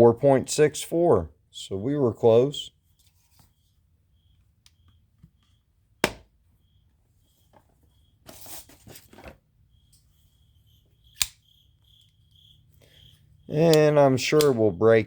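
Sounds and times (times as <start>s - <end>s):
knife blade clicking: 11.1s - 11.4s, 14.4s - 14.6s.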